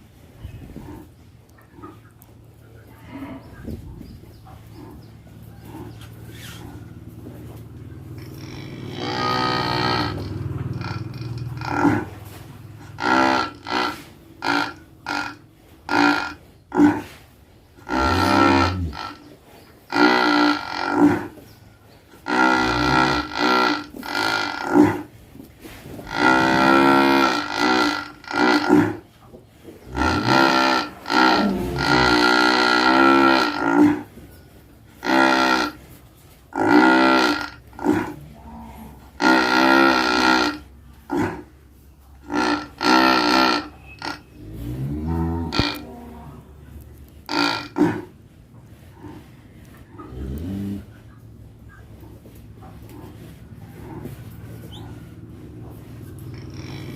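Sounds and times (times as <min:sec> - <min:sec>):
cow snoring: 0:08.2 - 0:17.2, 0:17.8 - 0:19.3, 0:22.2 - 0:25.1, 0:26.0 - 0:29.1, 0:29.8 - 0:34.1, 0:36.5 - 0:41.6, 0:42.2 - 0:45.9, 0:47.2 - 0:51.1, 0:52.0 - 0:56.9.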